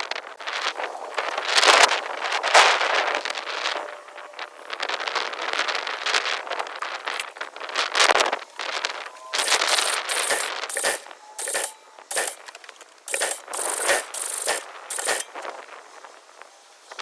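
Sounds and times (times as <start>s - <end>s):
metallic clattering bursts: 9.4s - 15.6s.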